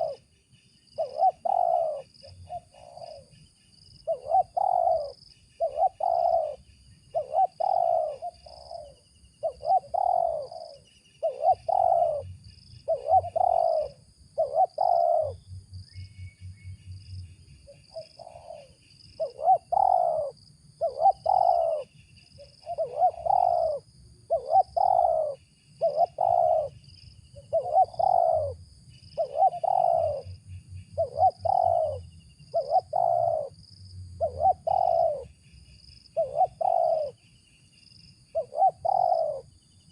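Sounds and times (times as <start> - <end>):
dove cooing: 0.0 - 0.2, 1.0 - 3.3, 4.0 - 15.4, 17.7 - 26.8, 27.4 - 30.4, 31.0 - 33.6, 34.2 - 35.3, 36.1 - 37.2, 38.3 - 39.6
faint high insect trilling: 0.0 - 39.9.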